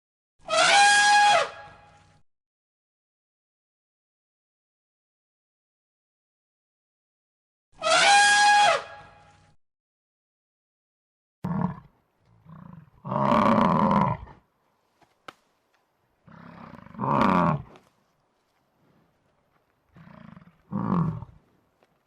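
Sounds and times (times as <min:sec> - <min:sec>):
large animal roaring: 0:11.4 - 0:14.4, 0:16.2 - 0:17.8, 0:20.0 - 0:21.4.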